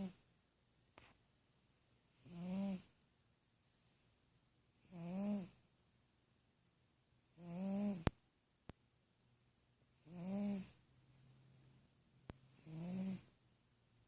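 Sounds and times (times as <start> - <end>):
pet snoring: 2.2 - 2.9, 4.8 - 5.6, 7.3 - 8.1, 10.0 - 10.8, 12.5 - 13.4.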